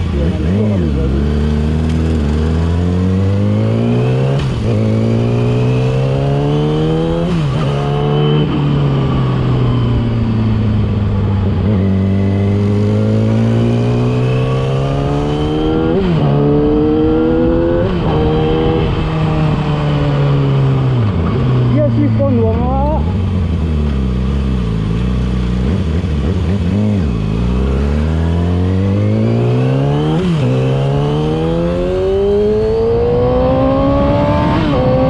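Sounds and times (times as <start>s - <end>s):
motorcycle engine accelerating: 0.0s - 35.0s.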